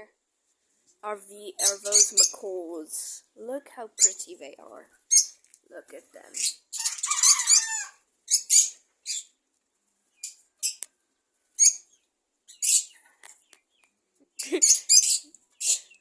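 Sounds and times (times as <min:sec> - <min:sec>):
parrots chirping and squawking: 0:01.6 - 0:02.4, 0:04.0 - 0:04.2, 0:05.1 - 0:05.4, 0:06.3 - 0:09.4, 0:10.2 - 0:10.8, 0:11.6 - 0:13.1, 0:14.3 - 0:16.0.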